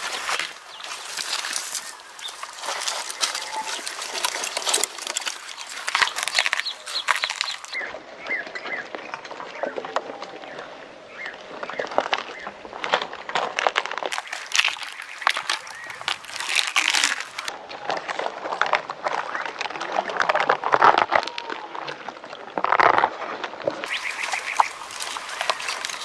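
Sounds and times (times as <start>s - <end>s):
camel chewing crunchily: 0.0s - 7.8s, 12.9s - 19.4s, 23.8s - 26.0s.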